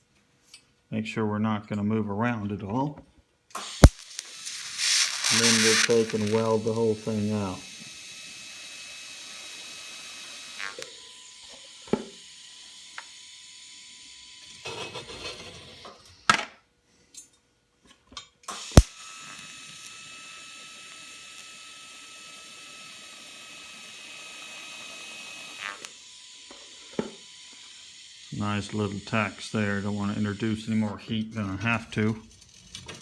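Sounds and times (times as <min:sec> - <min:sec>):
welding arc hissing: 0:03.6 - 0:07.4
sharp snap of arc striking: 0:03.8 - 0:06.6.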